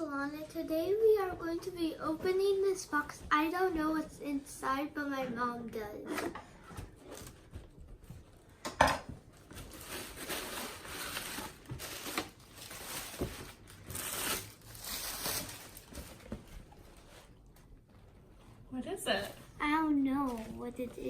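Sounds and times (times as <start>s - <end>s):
packaging tearing and crinkling: 9.5s - 16.2s.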